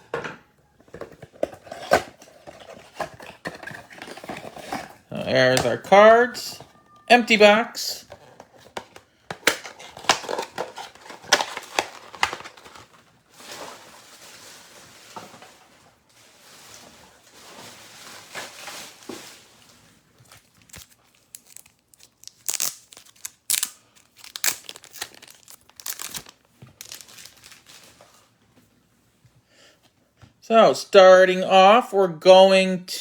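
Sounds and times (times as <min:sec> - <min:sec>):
plastic packaging crinkling and tearing: 0:08.0 - 0:15.4, 0:16.3 - 0:28.3.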